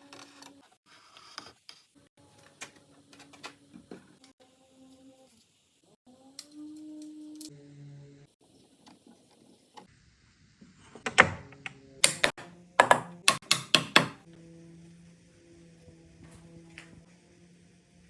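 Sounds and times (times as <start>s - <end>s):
sharp wooden knocks: 12.1s - 14.2s.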